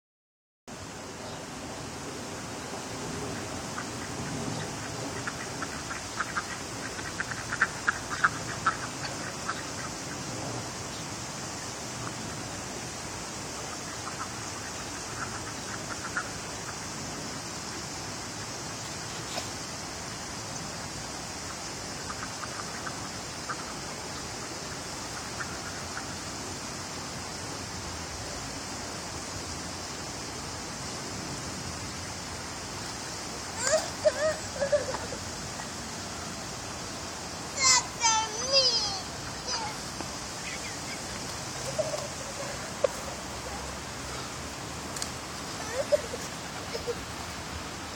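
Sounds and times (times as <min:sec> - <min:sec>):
creek water rushing: 0:00.7 - 0:47.9
ducks quacking: 0:03.4 - 0:10.3, 0:13.6 - 0:16.8, 0:22.0 - 0:23.8, 0:24.4 - 0:26.2.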